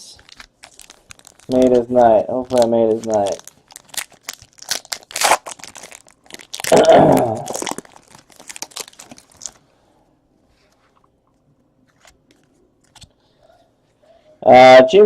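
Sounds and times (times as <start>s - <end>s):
card wrappers crinkling and tearing: 0.0s - 9.7s
loud wrapper crunch: 0.0s - 9.7s.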